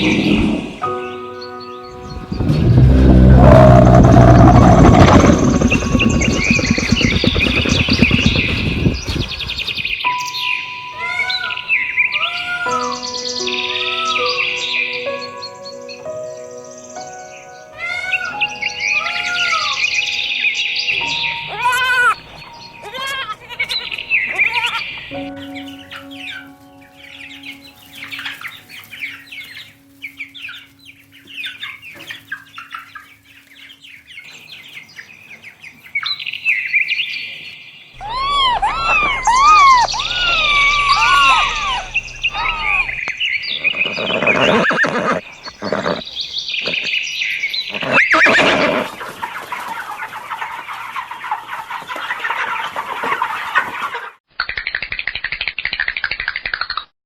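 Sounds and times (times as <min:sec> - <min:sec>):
birds chirping: 0:00.0 - 0:54.0.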